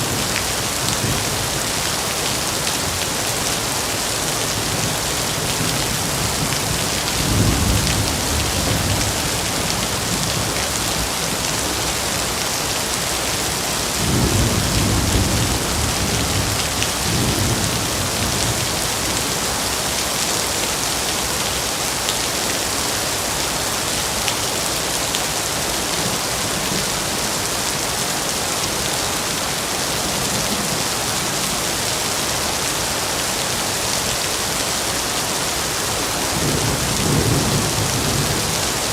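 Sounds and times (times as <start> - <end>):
rain falling in a forest: 0.0 - 38.9
low thunder rumbles: 5.8 - 10.6, 14.0 - 18.8.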